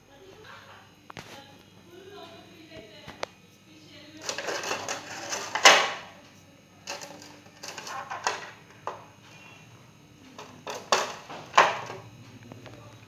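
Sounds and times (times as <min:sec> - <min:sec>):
plastic trays clattering: 0:04.2 - 0:06.2, 0:06.8 - 0:09.4, 0:10.3 - 0:12.1.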